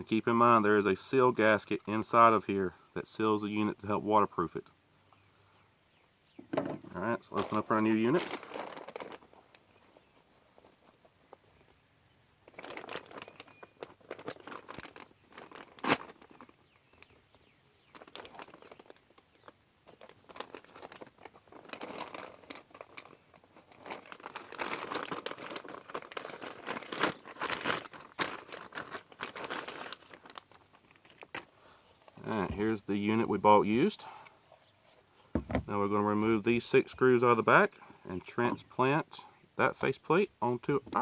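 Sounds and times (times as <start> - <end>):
packaging crinkling and rustling: 7.2 - 11.7, 12.4 - 17.2, 17.8 - 32.5.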